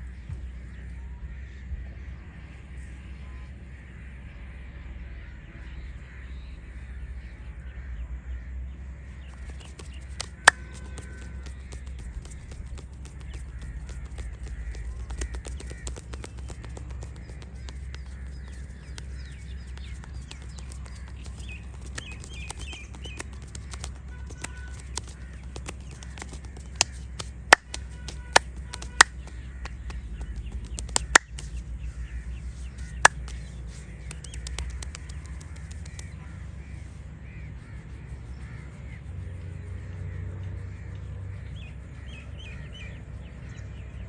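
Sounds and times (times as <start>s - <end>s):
low background rumble: 0.0s - 44.0s
crows cawing: 9.3s - 34.6s
sharp cracks: 9.4s - 31.6s.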